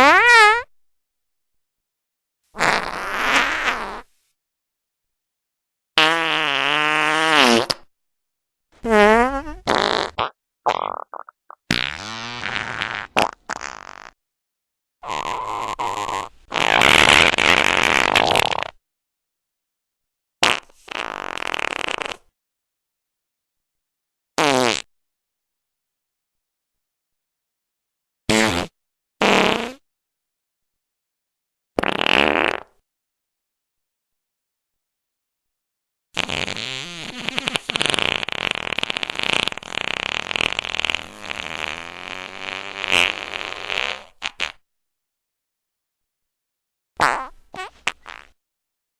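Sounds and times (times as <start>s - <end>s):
farting: 0.0s - 0.7s, 2.6s - 4.1s, 6.0s - 7.9s, 8.8s - 14.2s, 15.0s - 18.8s, 20.4s - 22.4s, 24.4s - 24.9s, 28.3s - 29.8s, 31.8s - 32.8s, 36.2s - 44.6s, 47.0s - 48.4s.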